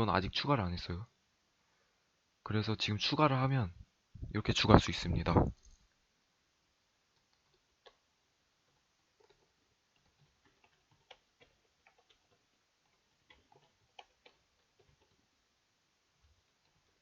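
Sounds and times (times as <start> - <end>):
keyboard keys clicking: 9.2 - 12.4.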